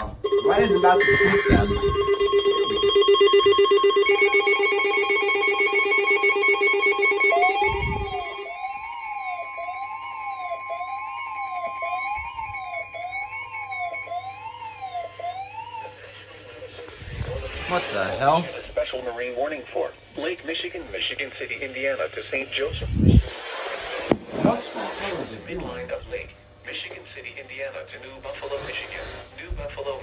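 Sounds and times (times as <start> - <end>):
steady high alert tone: 0.0 - 15.9
rising and falling siren alarm: 0.2 - 16.4
fast-pulsing buzz: 0.5 - 8.8.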